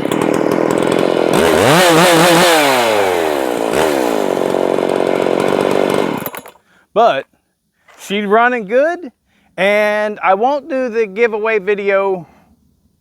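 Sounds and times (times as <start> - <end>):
chainsaw revving: 0.0 - 6.6.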